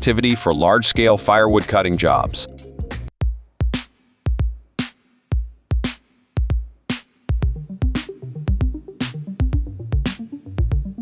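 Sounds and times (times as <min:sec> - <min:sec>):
electronic music with drum-machine beat: 0:00.0 - 0:03.1, 0:07.4 - 0:11.0.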